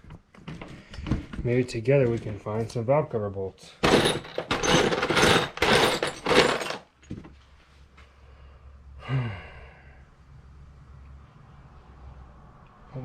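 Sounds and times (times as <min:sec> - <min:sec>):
metal bolts rattling in bin: 0:03.8 - 0:07.2
person sighing or grunting: 0:09.0 - 0:10.0.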